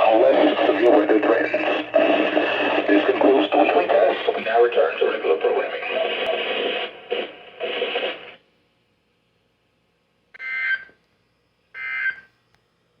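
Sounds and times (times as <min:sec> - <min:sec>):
spoken announcement over radio speaker: 0:00.0 - 0:08.4.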